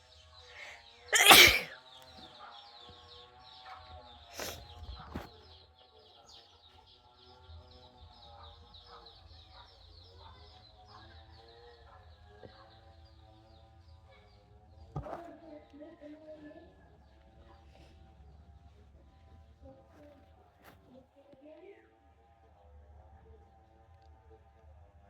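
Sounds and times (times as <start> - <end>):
person sneezing: 1.2 - 1.7, 4.4 - 4.6.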